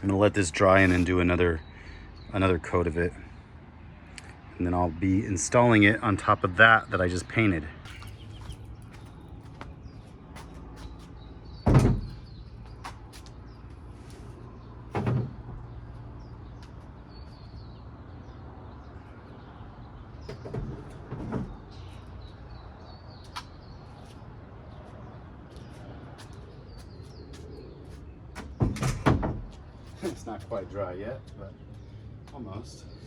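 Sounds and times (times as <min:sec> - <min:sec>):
loud thump: 0:11.7 - 0:12.3.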